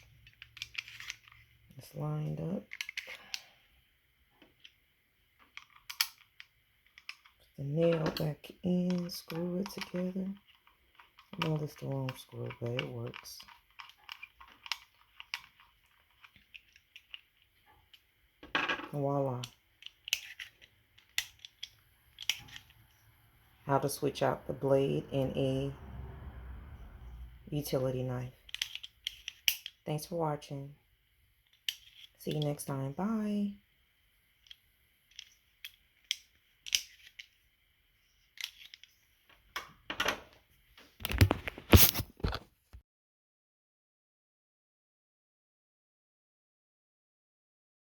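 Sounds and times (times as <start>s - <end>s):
person speaking a word: 18.9s - 19.5s.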